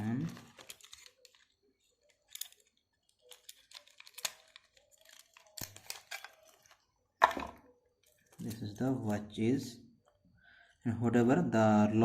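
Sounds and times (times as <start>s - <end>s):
plastic wrapping crinkling: 0.0s - 9.2s.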